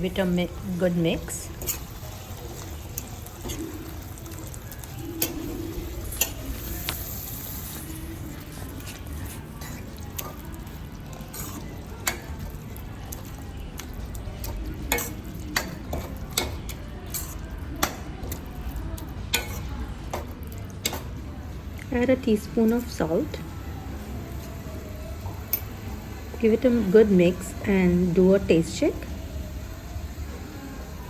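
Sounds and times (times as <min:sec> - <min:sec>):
low background noise: 0:00.0 - 0:31.0
spoon scraping a pan: 0:01.3 - 0:02.3, 0:05.2 - 0:10.5, 0:11.2 - 0:12.5, 0:14.4 - 0:18.4, 0:19.3 - 0:21.2.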